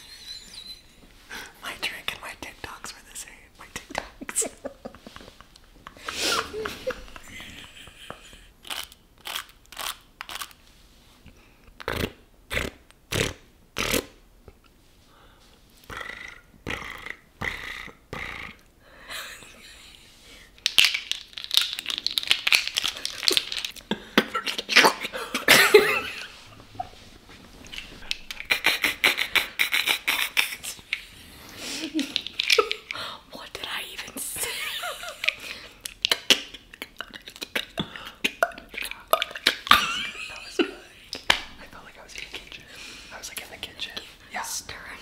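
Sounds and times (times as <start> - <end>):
mouth pops and clicks: 11.8 - 14.7, 15.8 - 18.7, 20.6 - 24.3, 27.6 - 31.1.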